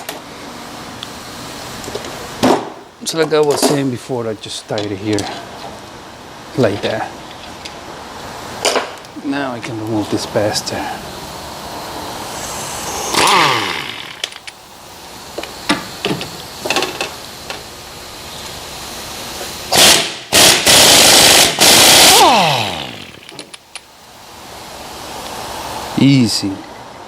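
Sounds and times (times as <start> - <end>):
motor winding down whine: 10.1 - 14.5, 19.7 - 23.4
impact wrench hammering: 12.7 - 14.4, 19.7 - 23.4.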